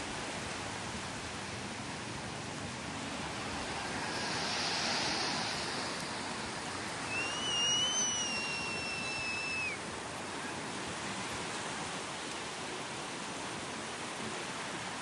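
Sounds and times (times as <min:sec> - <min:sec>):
surf washing onto beach: 0:00.0 - 0:15.0
wave breaking: 0:00.0 - 0:15.0
thin high whistle: 0:07.0 - 0:09.8.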